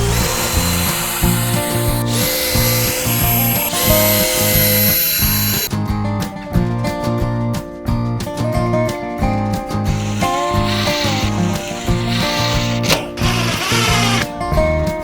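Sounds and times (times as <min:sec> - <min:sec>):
power drill whining: 0:00.0 - 0:05.7, 0:09.9 - 0:14.8.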